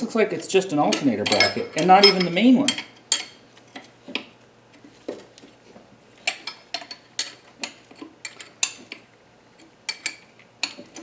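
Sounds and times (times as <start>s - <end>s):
tools clinking on metal: 0.8s - 3.4s, 6.3s - 9.0s.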